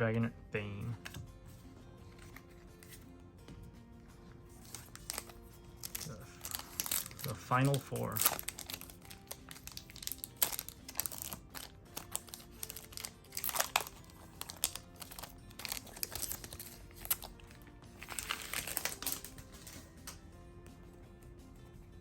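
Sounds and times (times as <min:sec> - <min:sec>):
faint background music: 0:00.0 - 0:22.0
wrapper crinkling and rustling: 0:04.5 - 0:20.2.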